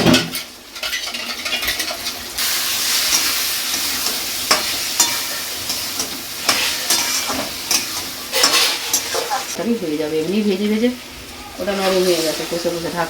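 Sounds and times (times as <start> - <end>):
paste sizzling in a pan: 0.4 - 13.0.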